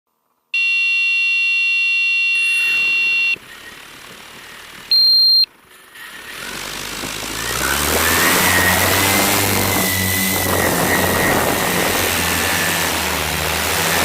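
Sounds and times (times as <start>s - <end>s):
short high beep: 0.6s - 3.4s, 4.9s - 5.5s
long electronic tone: 0.6s - 3.7s, 4.9s - 5.5s.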